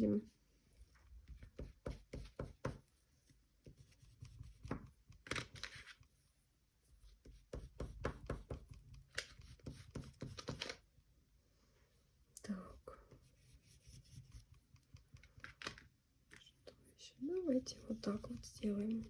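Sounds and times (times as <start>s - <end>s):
oil pastel scratching on paper: 0.7s - 10.8s, 12.7s - 15.5s, 16.7s - 19.0s.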